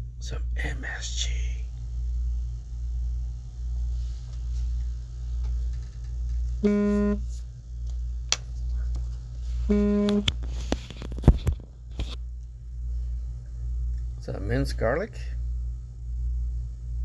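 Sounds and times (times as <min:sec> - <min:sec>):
low bass pulse: 0:06.5 - 0:07.4, 0:09.6 - 0:10.3.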